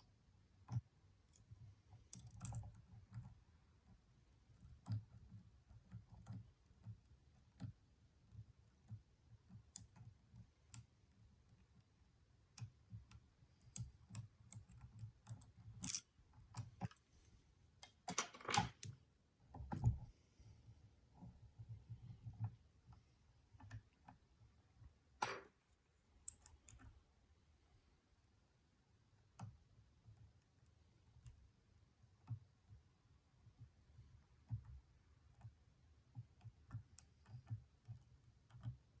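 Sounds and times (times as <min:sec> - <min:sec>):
lock pick clicking in padlock: 0:14.1 - 0:16.7.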